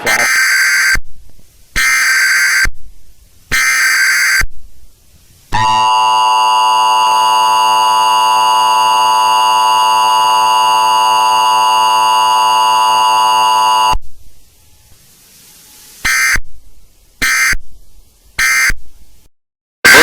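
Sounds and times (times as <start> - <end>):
two-tone alarm: 0.0 - 1.0, 1.8 - 2.7, 3.5 - 4.5, 5.5 - 14.0, 16.0 - 16.4, 17.2 - 17.6, 18.4 - 18.8.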